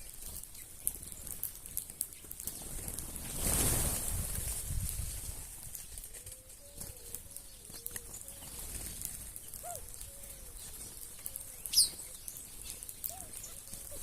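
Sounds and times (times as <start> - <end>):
small birds chirping: 0.0 - 3.7, 5.6 - 14.0
dove cooing: 6.2 - 14.0.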